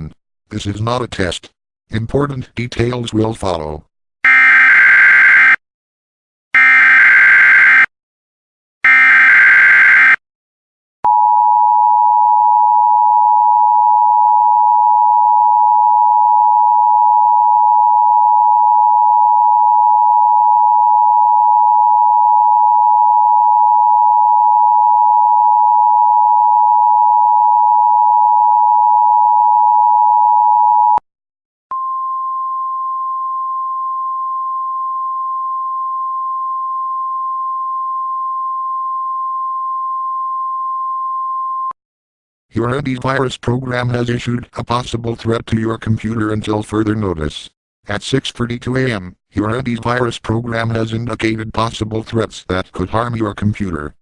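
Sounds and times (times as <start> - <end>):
steady sine tone: 31.7 - 41.7.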